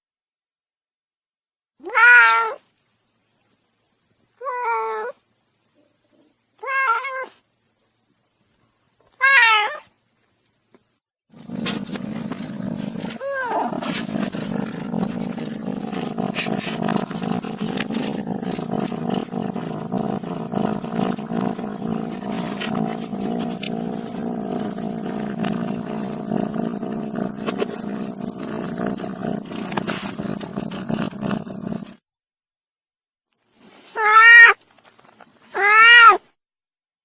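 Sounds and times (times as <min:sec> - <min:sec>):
low gritty vocal sound: 0:11.4 - 0:31.8
kitten mewing: 0:11.4 - 0:32.0.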